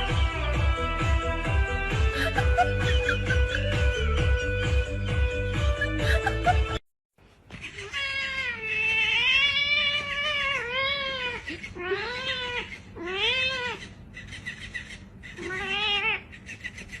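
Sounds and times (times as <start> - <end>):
cat yowling and meowing: 7.5 - 14.6, 15.3 - 17.0.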